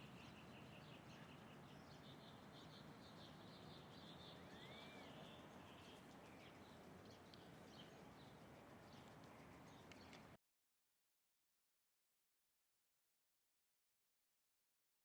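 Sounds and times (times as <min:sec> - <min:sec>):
small birds chirping: 0:00.0 - 0:10.3.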